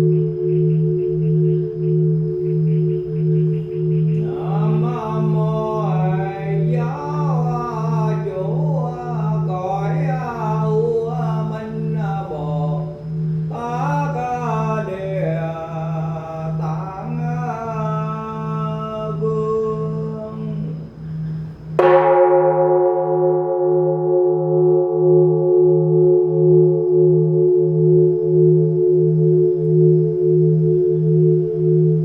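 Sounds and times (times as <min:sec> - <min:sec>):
person chanting: 0:00.0 - 0:22.3
singing bowl hum: 0:00.0 - 0:32.0.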